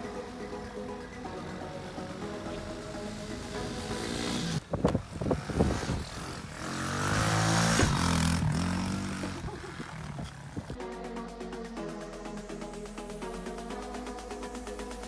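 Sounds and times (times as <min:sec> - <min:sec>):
small motorbike engine revving: 0:00.0 - 0:10.8.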